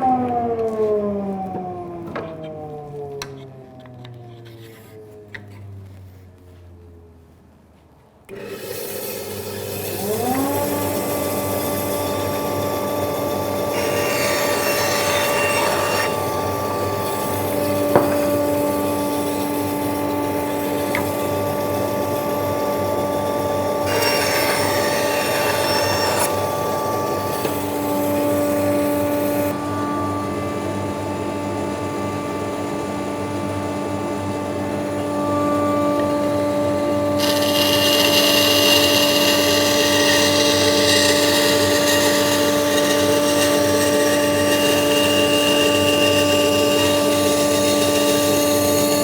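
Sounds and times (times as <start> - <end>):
saw blade cutting wood: 8.3 - 29.6, 37.0 - 49.0
band saw motor running: 8.3 - 49.0.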